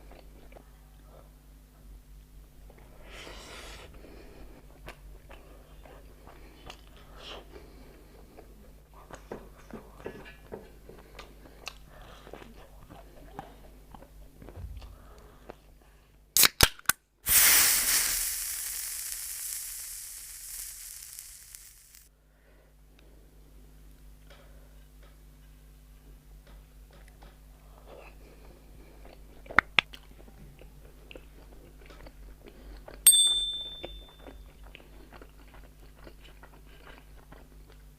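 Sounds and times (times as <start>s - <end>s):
crunching and chewing: 0.0s - 0.7s, 4.1s - 15.9s, 26.4s - 33.0s, 34.1s - 37.9s
loud hiss: 17.3s - 22.1s.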